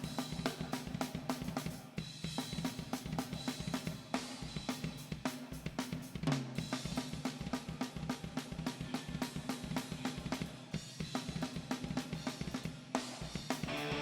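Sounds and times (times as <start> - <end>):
drum kit beat: 0.0 - 14.0
live band playing: 13.5 - 14.0.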